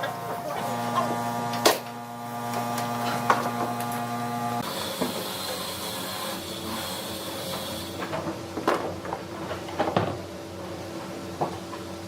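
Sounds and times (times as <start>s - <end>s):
electric motor hum: 0.0s - 5.0s.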